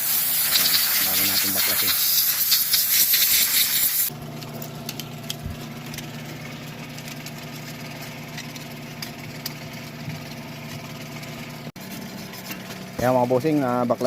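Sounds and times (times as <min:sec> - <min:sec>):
loud spraying hiss: 0:00.0 - 0:04.1
engine idling: 0:04.1 - 0:14.0.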